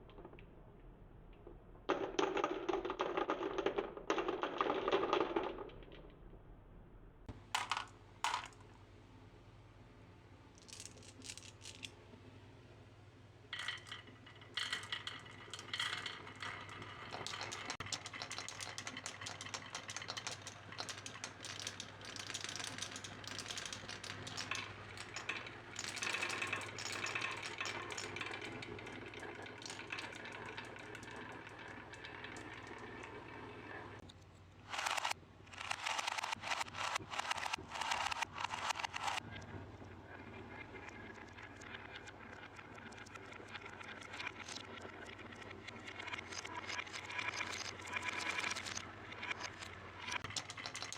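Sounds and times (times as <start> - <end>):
marbles rattling down a track: 1.9 - 6.0, 13.6 - 34.0, 34.7 - 39.3, 40.1 - 50.9.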